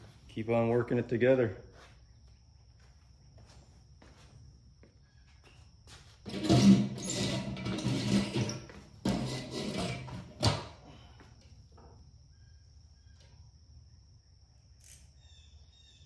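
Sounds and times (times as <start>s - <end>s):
metal engine parts scraping: 6.3s - 10.7s.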